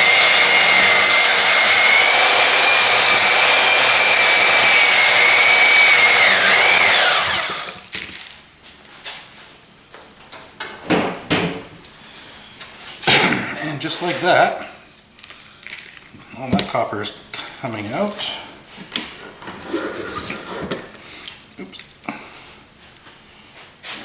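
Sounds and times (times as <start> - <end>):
band saw whining: 0.0 - 7.8.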